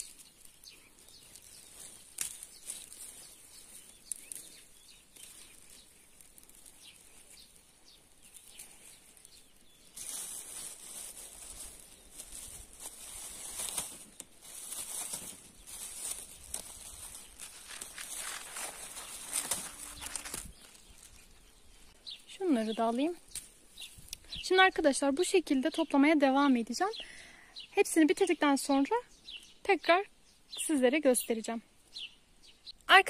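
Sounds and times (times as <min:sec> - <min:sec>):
pine branches rustling: 0:00.0 - 0:24.6.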